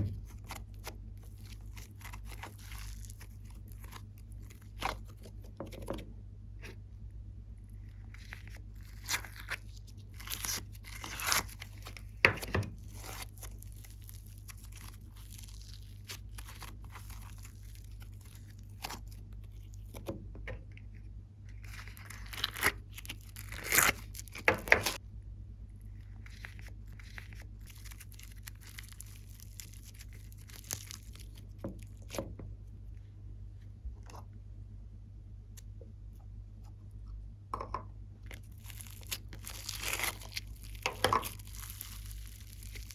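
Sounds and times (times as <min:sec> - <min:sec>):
slime crackling and popping: 0:00.0 - 0:05.3, 0:08.1 - 0:20.0, 0:21.6 - 0:25.0, 0:26.3 - 0:32.2, 0:38.3 - 0:42.9
low steady hum: 0:00.0 - 0:42.9.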